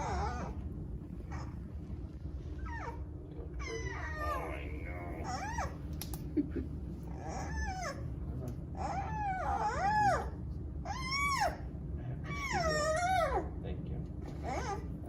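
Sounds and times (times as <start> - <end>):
panda cub squealing: 12.3 - 13.5.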